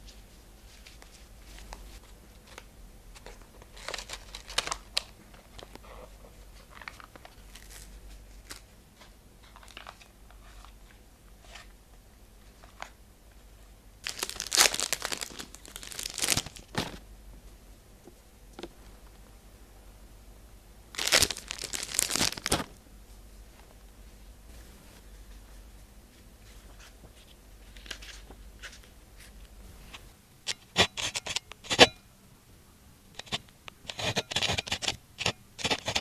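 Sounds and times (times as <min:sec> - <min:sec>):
packaging crinkling and tearing: 0:02.4 - 0:05.8, 0:06.6 - 0:08.7, 0:09.4 - 0:10.8, 0:14.0 - 0:17.0, 0:20.9 - 0:22.8.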